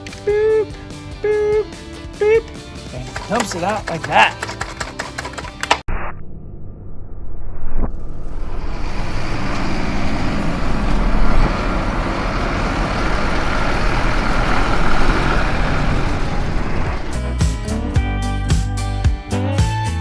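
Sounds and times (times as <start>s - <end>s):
truck engine running: 0.7s - 5.8s, 8.2s - 17.4s.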